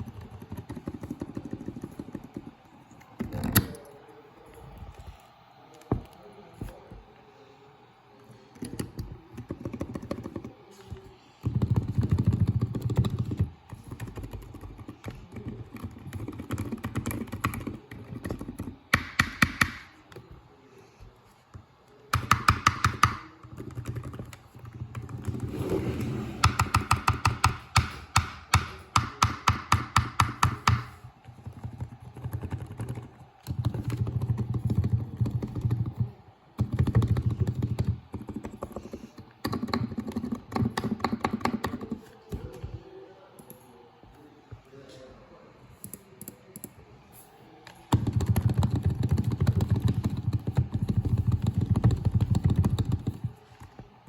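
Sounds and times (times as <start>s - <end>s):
keyboard typing: 0.0s - 3.9s, 8.5s - 20.3s, 21.5s - 42.6s, 47.9s - 54.0s.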